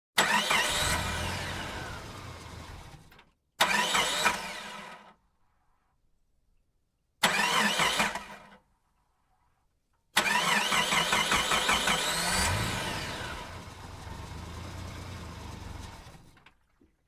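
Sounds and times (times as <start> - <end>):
engine starting up: 0.2 - 5.2, 7.2 - 8.6, 10.2 - 16.6.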